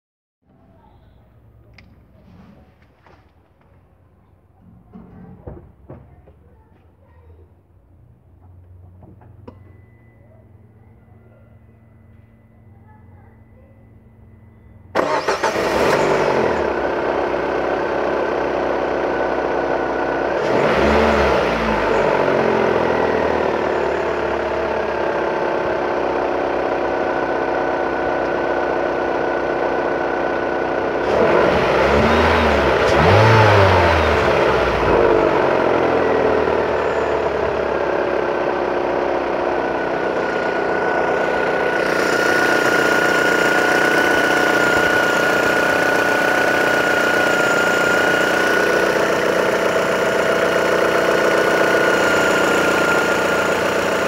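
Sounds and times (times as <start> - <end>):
car engine idling and revving: 11.7 - 54.0
car engine starting: 14.9 - 54.0.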